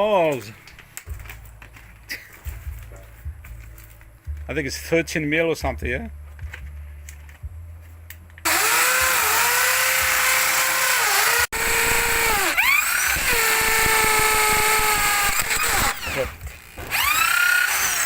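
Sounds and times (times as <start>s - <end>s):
electric drill boring into concrete: 8.4s - 18.0s.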